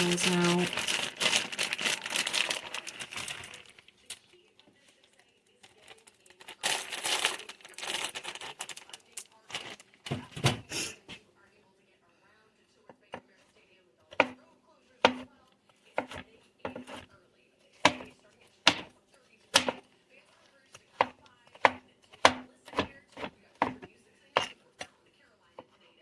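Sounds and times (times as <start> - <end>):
knife chopping on cutting board: 15.0 - 15.3, 16.0 - 17.0, 17.8 - 18.9, 19.5 - 19.8, 21.0 - 24.6.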